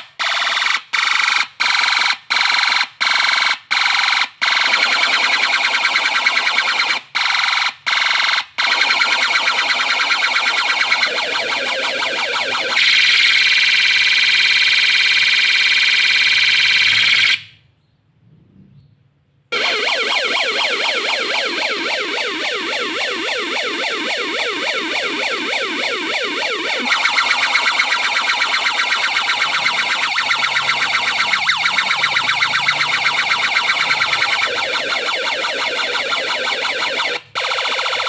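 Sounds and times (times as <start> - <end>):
electronic siren alarm tones: 1.4 - 17.6, 19.5 - 38.0.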